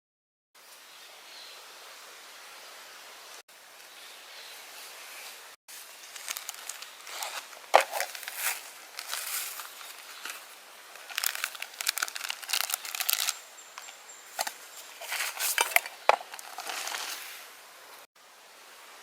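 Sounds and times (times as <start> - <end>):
crinkly material rustling: 5.7 - 17.4.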